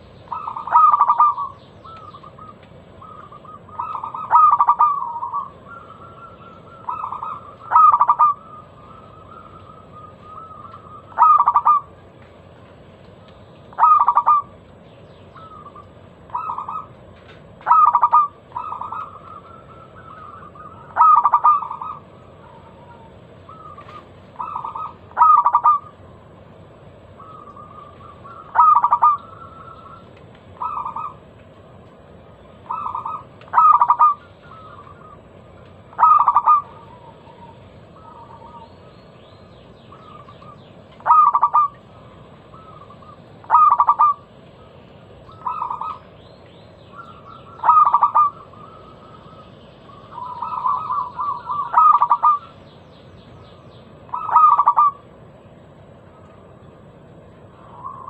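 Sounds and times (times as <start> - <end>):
dove cooing: 0.0 - 12.1, 13.2 - 14.6, 15.3 - 26.4, 27.0 - 31.3, 32.5 - 38.9, 39.9 - 46.2, 46.9 - 52.7, 54.0 - 55.1, 57.4 - 58.0.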